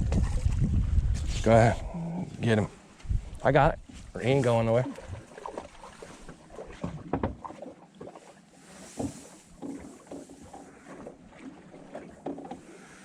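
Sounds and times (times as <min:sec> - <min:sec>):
water splashing and lapping: 0:00.0 - 0:13.0
knocks on boat: 0:06.8 - 0:07.5.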